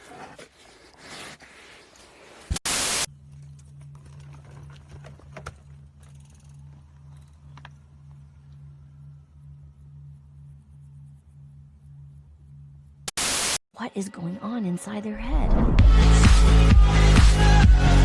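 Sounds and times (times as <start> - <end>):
loud burst of static: 2.6 - 3.1, 13.1 - 13.6
low steady hum: 3.1 - 13.1.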